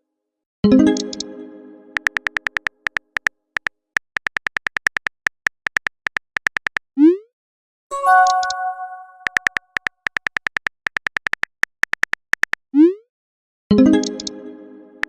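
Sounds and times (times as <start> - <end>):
phone keyboard typing ticks: 2.0 - 6.9, 8.1 - 12.6
message sent swoop: 7.9 - 9.4
notification chime: 7.9 - 9.5.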